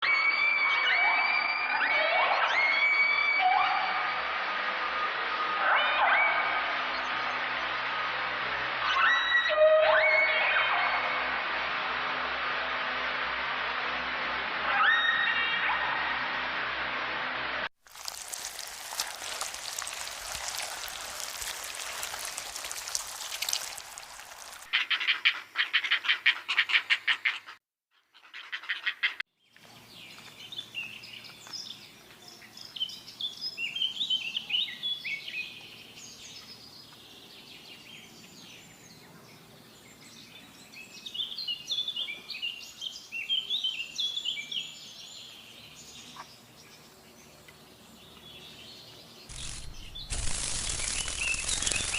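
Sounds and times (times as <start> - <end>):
birds chirping: 48.1 - 51.9
steady hiss: 49.3 - 51.9.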